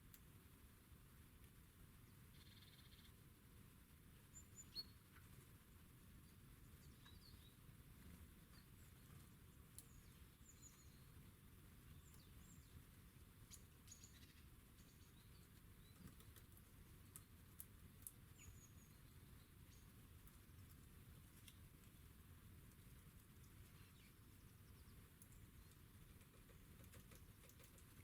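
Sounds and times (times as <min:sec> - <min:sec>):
songbirds chirping: 0:00.0 - 0:28.0
sharp ticks: 0:25.2 - 0:28.0.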